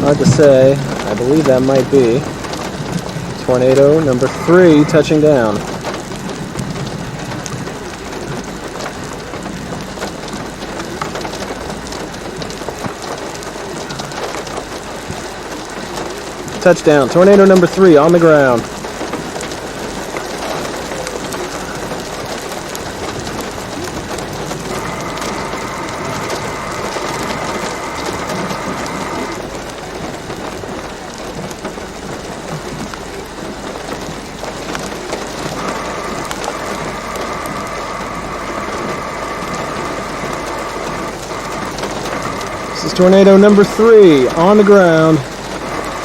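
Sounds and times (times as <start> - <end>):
heavy rain on a vehicle: 0.0 - 46.0
steady high tone: 3.4 - 5.7, 24.4 - 29.5, 35.2 - 46.0.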